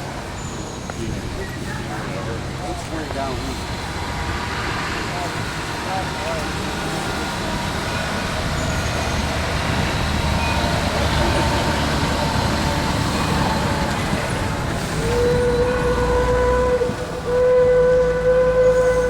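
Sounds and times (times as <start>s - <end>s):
train whistle blowing: 14.8s - 19.0s.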